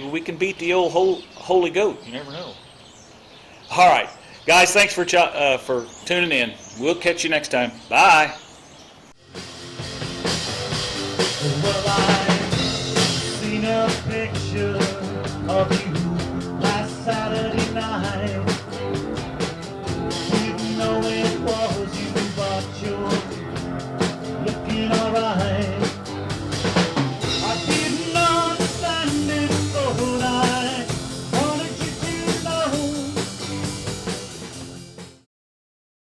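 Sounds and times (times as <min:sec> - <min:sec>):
drum kit: 0:09.2 - 0:35.2
rock song with singing: 0:09.3 - 0:35.1.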